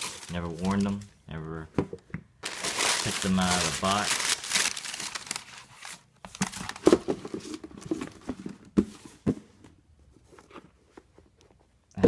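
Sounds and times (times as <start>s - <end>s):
shoebox and sneakers handled: 2.4s - 11.8s.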